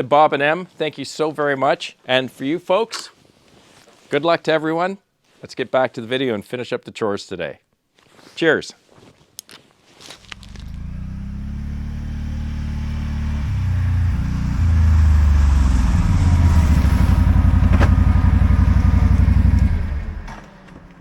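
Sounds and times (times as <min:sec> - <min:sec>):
atv engine running: 0:10.2 - 0:21.0.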